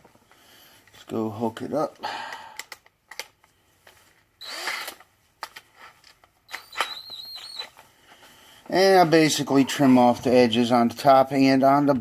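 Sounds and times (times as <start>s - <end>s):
power drill running: 4.4s - 5.0s, 6.5s - 7.6s.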